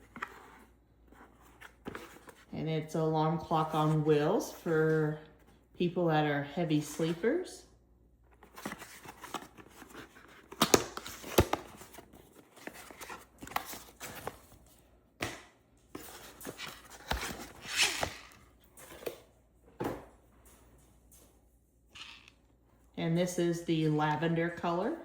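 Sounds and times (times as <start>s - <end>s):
packaging rustling and tearing: 16.0s - 18.4s.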